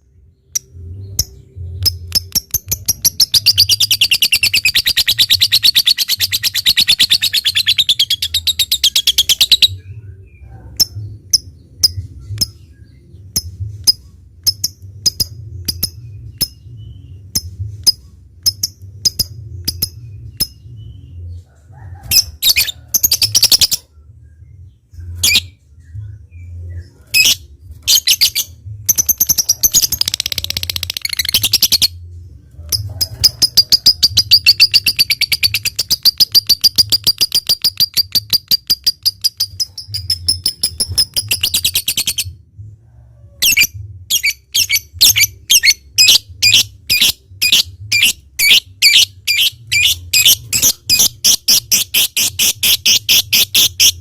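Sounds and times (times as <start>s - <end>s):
lovebird chattering: 0.6s - 9.8s, 32.7s - 42.3s, 43.4s - 54.0s
lovebird chipping calls: 0.6s - 9.8s, 32.7s - 42.3s, 43.4s - 54.0s.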